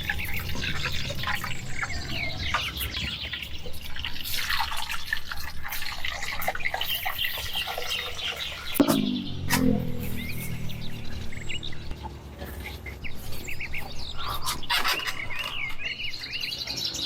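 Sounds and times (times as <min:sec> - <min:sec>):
water dripping and splashing: 0:00.0 - 0:15.9
steady low hum: 0:08.8 - 0:14.2.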